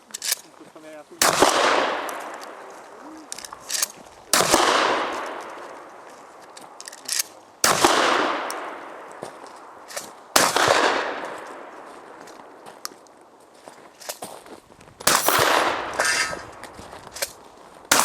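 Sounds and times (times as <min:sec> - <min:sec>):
shotgun shots echoing: 0:01.2 - 0:02.9, 0:03.6 - 0:06.0, 0:07.1 - 0:12.6, 0:15.1 - 0:18.0
shotgun pump clacks: 0:03.3 - 0:04.6, 0:15.1 - 0:18.0.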